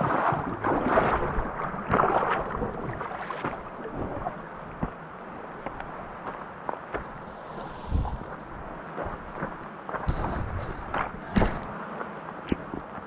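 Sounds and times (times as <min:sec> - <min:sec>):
water splashing and sloshing: 0:00.0 - 0:11.6
wind buffeting microphone: 0:07.0 - 0:09.6.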